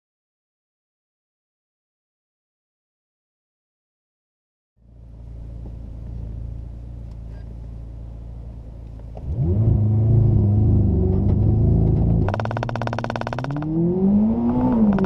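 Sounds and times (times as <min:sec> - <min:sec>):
car engine revving: 0:05.0 - 0:15.0.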